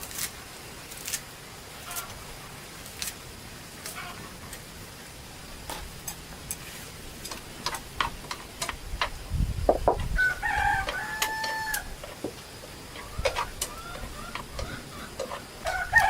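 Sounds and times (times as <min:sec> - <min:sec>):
light clicks and knocks: 0:07.3 - 0:10.2
rooster crowing: 0:10.1 - 0:12.0, 0:13.4 - 0:16.0.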